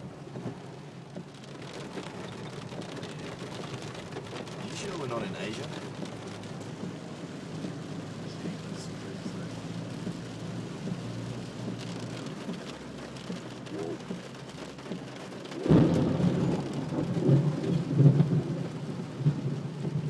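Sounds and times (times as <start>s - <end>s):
water rushing around car: 0.0s - 20.0s.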